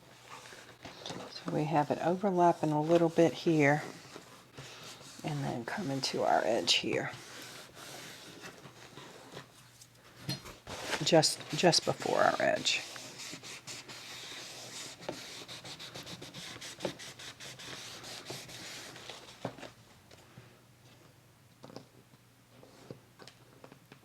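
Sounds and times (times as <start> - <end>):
scratching strokes on paper: 0.1 - 9.6, 10.7 - 19.5
paper rustling: 0.1 - 19.8.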